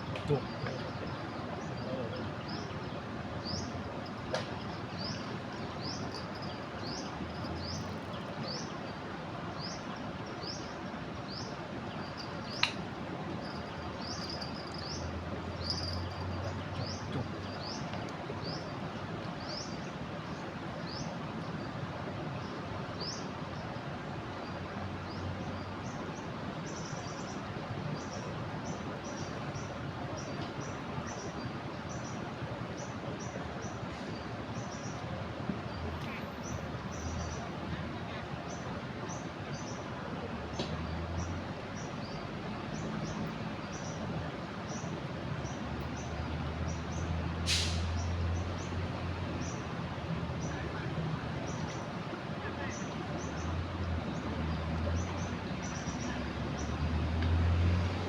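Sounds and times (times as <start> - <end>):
bird chirping: 13.4 - 17.8.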